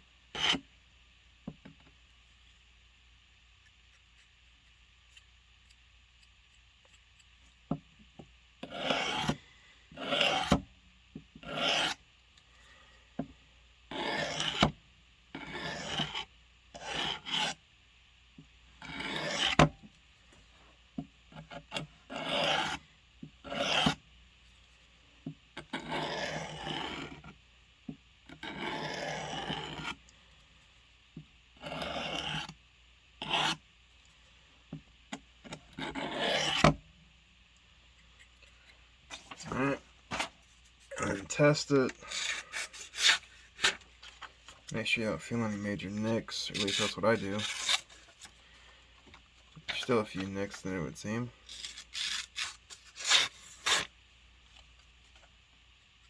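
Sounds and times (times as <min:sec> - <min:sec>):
blade rasping across sharpener: 0:08.6 - 0:09.4, 0:10.0 - 0:10.6, 0:11.4 - 0:12.0, 0:13.9 - 0:14.6, 0:15.4 - 0:17.6, 0:18.8 - 0:19.6, 0:21.7 - 0:22.8, 0:23.4 - 0:24.0, 0:25.7 - 0:27.3, 0:28.4 - 0:30.0, 0:31.6 - 0:32.5, 0:33.2 - 0:33.6, 0:35.8 - 0:36.7, 0:42.0 - 0:43.8, 0:46.4 - 0:48.0, 0:51.5 - 0:53.9.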